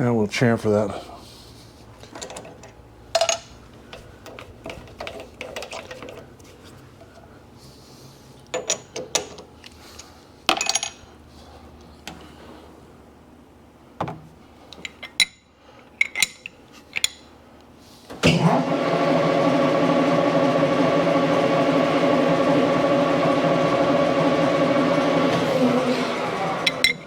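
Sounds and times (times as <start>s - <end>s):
lathe motor humming: 18.3s - 27.0s.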